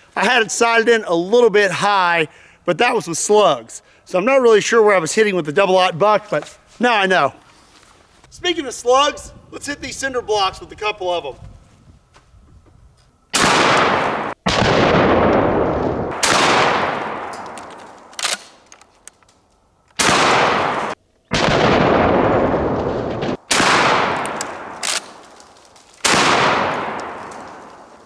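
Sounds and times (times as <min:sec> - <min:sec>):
long echo of gunshots: 0:13.4 - 0:18.5, 0:20.0 - 0:25.4, 0:26.0 - 0:28.0
loud shotgun shots: 0:13.4 - 0:18.5, 0:20.0 - 0:25.4, 0:26.0 - 0:27.9.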